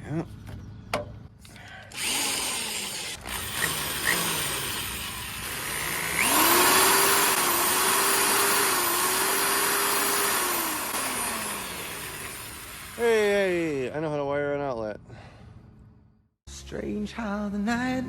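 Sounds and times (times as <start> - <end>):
drill trigger blips: 1.5 - 13.3
electric drill motor running: 1.9 - 13.4.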